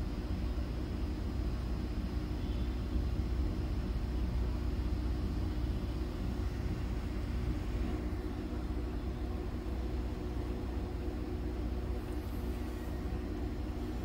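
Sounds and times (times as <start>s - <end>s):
low background hum and rumble: 0.0s - 14.0s.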